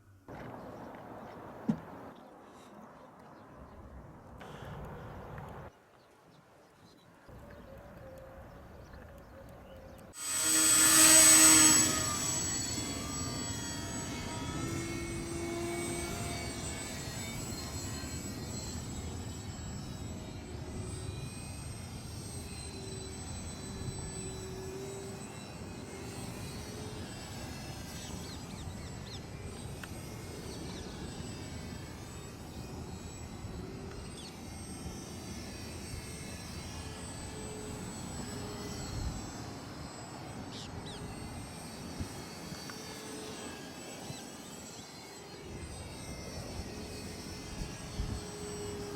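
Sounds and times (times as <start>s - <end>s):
model airplane motor whine: 10.1s - 48.9s.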